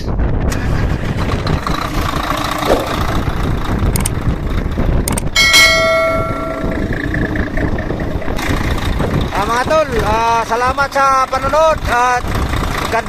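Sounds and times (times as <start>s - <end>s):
diesel truck engine running: 0.5s - 13.0s
sharp clicks: 3.9s - 4.2s, 5.1s - 5.3s
metallic ringing tone: 5.4s - 9.3s.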